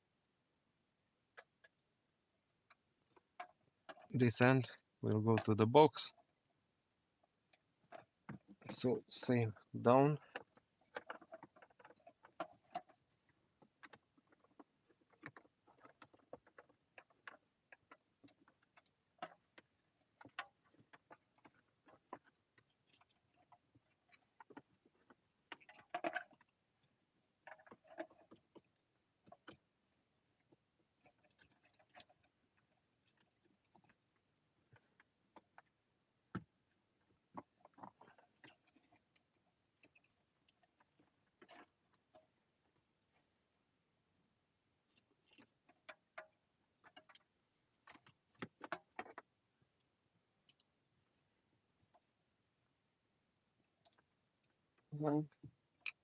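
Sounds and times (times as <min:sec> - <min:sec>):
wiring harness rustling: 0:09.8 - 0:26.6, 0:37.0 - 0:42.5.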